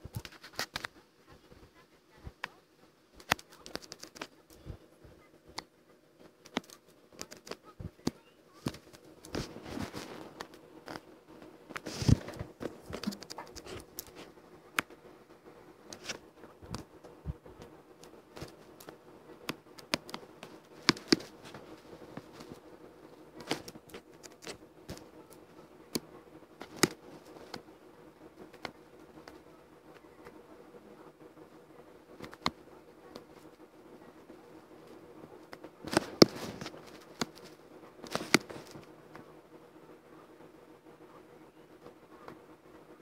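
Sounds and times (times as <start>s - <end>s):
faint steady hum: 0.0s - 43.0s
pen strokes and taps: 6.4s - 15.0s, 15.9s - 22.6s, 23.4s - 27.7s, 32.2s - 33.6s, 34.8s - 39.2s.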